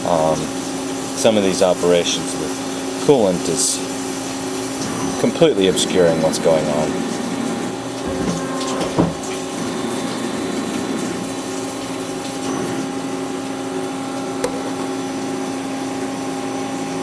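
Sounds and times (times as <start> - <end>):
brief knock: 14.4 - 15.0.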